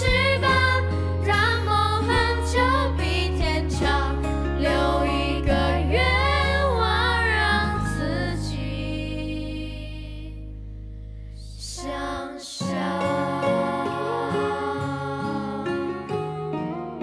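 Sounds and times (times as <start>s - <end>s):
bass and keyboard chords: 0.0s - 17.0s
person singing with vibrato: 11.6s - 16.4s.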